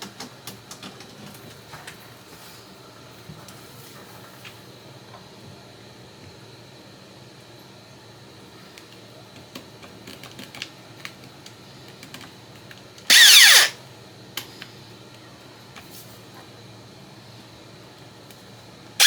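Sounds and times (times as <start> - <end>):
power drill burst: 13.1 - 13.8.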